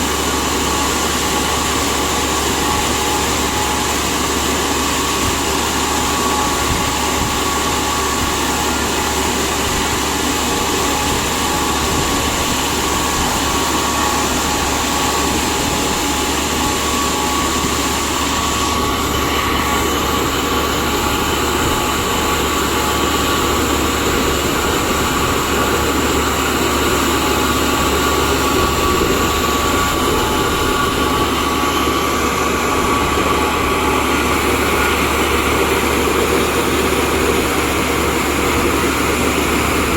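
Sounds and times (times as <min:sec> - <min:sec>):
drilling rig machinery noise: 0:00.0 - 0:39.9
steady high whine: 0:00.0 - 0:39.9.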